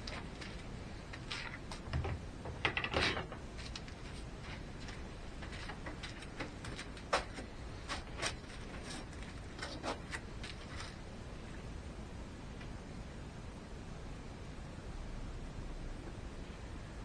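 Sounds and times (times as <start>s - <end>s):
objects clicking on workbench: 1.2s - 4.0s.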